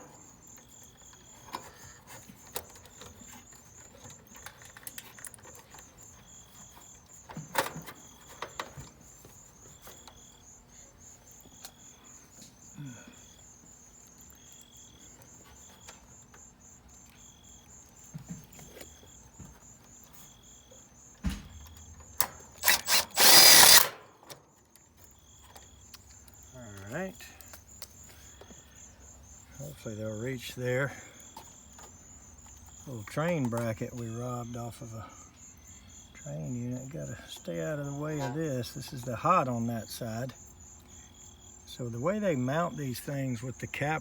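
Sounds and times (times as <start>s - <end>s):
insects chirping: 0.0s - 44.0s
power drill driving a screw: 22.6s - 24.0s.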